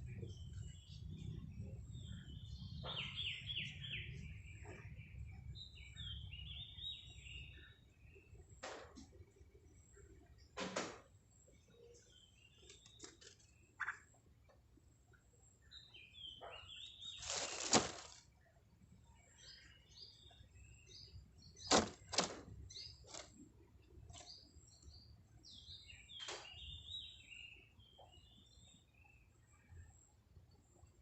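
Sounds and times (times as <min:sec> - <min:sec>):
small birds chirping: 0:00.0 - 0:10.6, 0:11.2 - 0:31.0
loud rustling: 0:17.2 - 0:18.2, 0:21.7 - 0:22.4.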